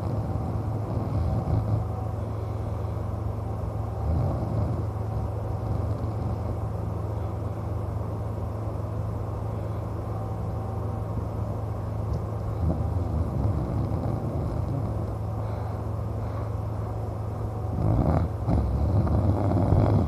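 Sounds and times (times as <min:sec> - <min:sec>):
man snoring: 0:00.0 - 0:01.9, 0:04.0 - 0:06.5, 0:12.6 - 0:15.1, 0:17.7 - 0:20.0
steady low rumble: 0:00.0 - 0:20.0.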